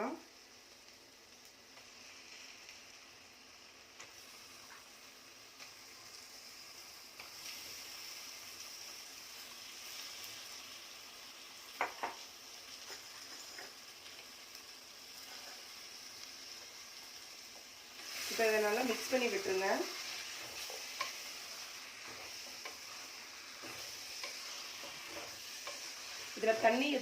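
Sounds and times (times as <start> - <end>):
chicken sizzling in hot oil: 0.0 - 27.0.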